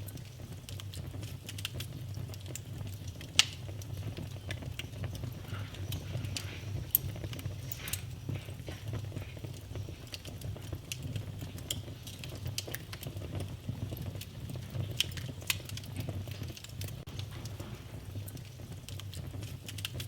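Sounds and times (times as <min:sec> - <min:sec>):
fire popping: 0:00.0 - 0:20.0
low rumble of flames: 0:00.0 - 0:20.0
wood fire crackling: 0:00.0 - 0:20.0.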